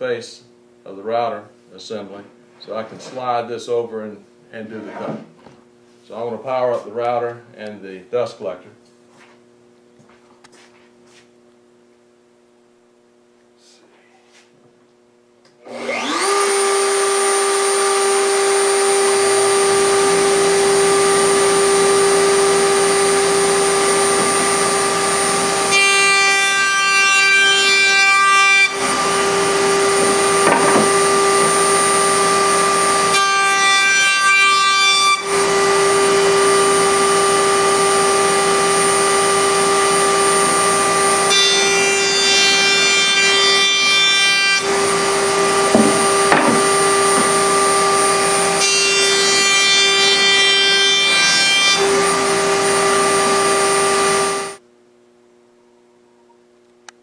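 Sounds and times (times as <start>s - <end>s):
router high whine: 15.6s - 25.8s, 35.2s - 41.8s, 51.8s - 54.6s
router bit cutting wood: 15.6s - 54.6s.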